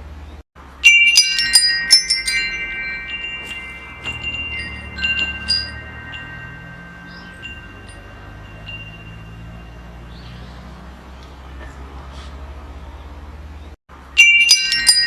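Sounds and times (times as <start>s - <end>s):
wind chimes ringing: 0.6s - 11.0s, 14.0s - 15.0s.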